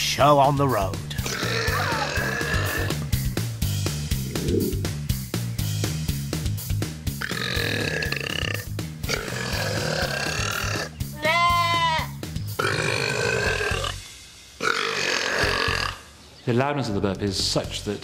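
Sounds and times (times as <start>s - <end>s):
background music with beat: 0.3s - 14.6s
man belching: 1.2s - 3.1s, 4.2s - 5.0s, 7.1s - 11.0s, 12.6s - 14.0s, 14.6s - 16.1s.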